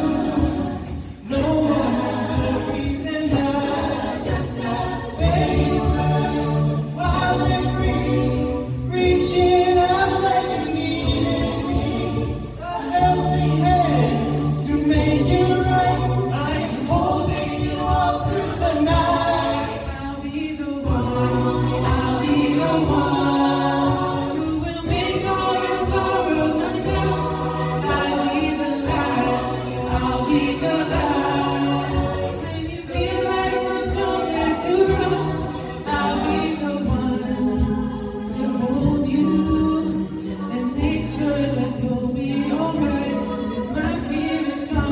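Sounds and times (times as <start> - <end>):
a cappella group singing: 0.0 - 44.9.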